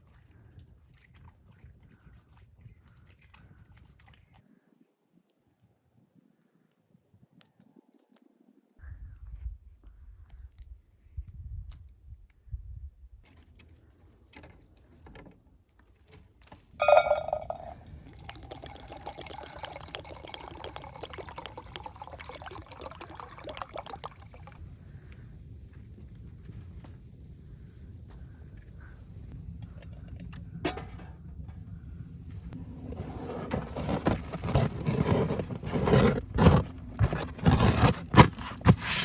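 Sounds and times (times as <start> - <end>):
liquid pouring: 16.8 - 24.6.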